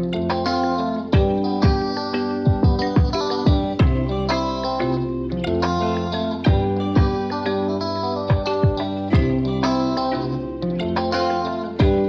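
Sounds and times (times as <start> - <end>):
guitar music: 0.0 - 12.0
drum hits: 1.2 - 1.9, 2.5 - 4.1, 6.5 - 7.2, 8.3 - 9.4.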